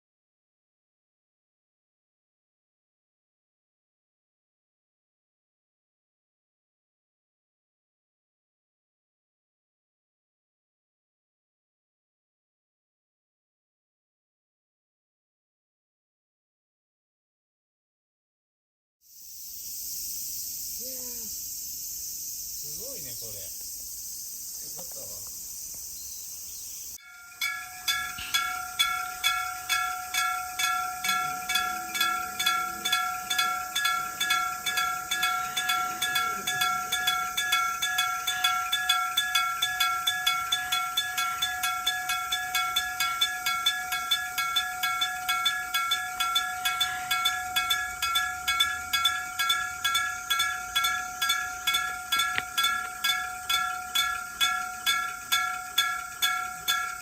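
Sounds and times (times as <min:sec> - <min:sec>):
level-crossing bell ringing: 0:27.0 - 0:57.0.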